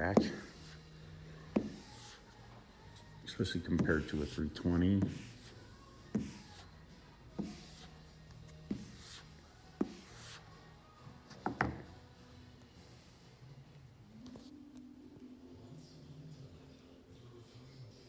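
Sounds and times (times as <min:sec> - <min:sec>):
sandpaper rasping strokes: 0:03.8 - 0:06.7.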